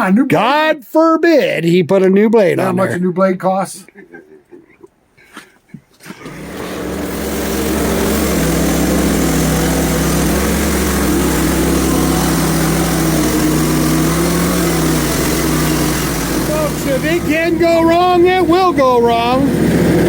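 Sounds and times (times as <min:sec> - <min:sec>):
small gasoline engine running: 0:06.1 - 0:20.0.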